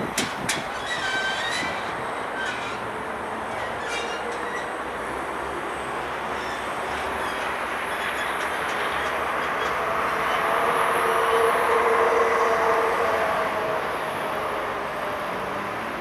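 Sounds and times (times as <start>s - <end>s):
wheel squeals: 0.0s - 11.1s
railway cars rumbling: 0.0s - 16.0s.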